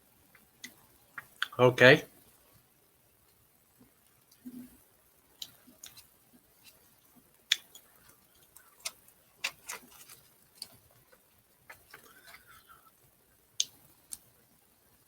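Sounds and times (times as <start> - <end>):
person chewing hard candy: 5.4 - 6.1, 7.5 - 13.0.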